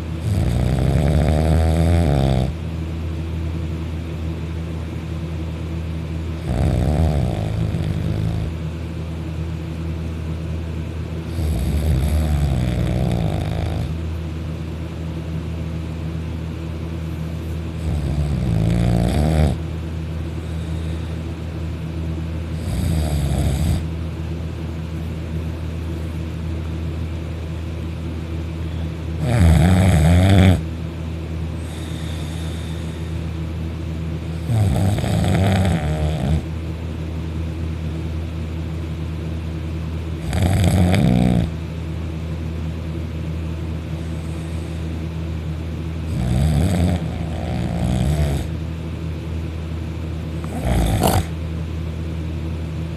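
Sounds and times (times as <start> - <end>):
steady low hum: 0.0 - 52.9
loud snoring: 0.2 - 2.6, 6.4 - 8.6, 11.3 - 14.0, 17.8 - 19.6, 22.5 - 23.9, 29.2 - 30.6, 31.6 - 33.0, 34.4 - 36.5, 40.2 - 41.6, 46.1 - 48.5, 50.4 - 51.4.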